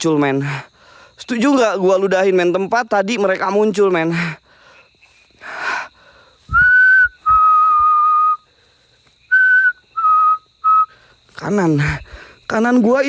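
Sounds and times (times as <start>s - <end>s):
person whistling: 6.5s - 8.4s, 9.3s - 10.9s.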